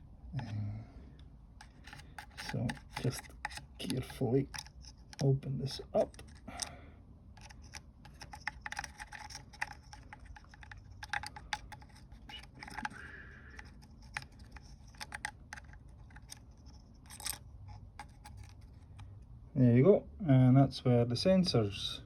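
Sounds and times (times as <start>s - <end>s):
small clicks of parts handled: 1.6s - 5.3s, 7.4s - 19.2s
light scraping of parts: 1.6s - 6.8s, 7.4s - 19.3s.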